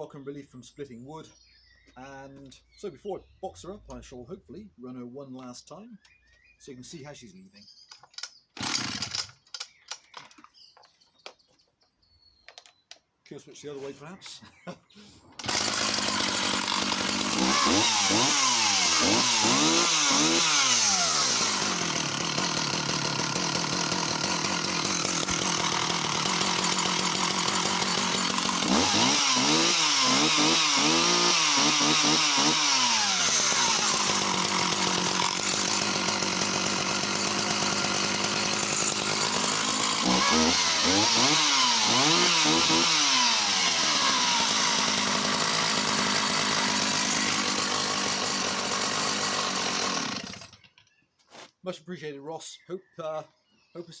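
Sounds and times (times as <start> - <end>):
chainsaw idling and revving: 8.6 - 10.2, 15.4 - 50.7.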